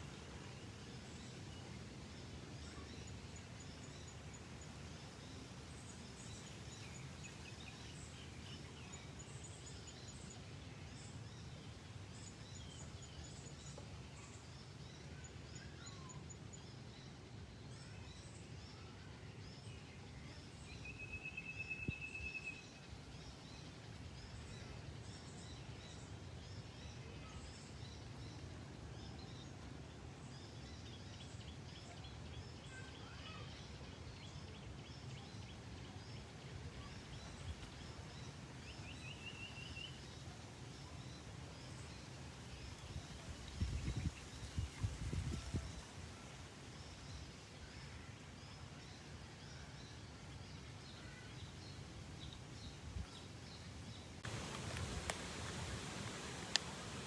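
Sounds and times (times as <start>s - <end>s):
birds chirping: 53.0s - 57.0s.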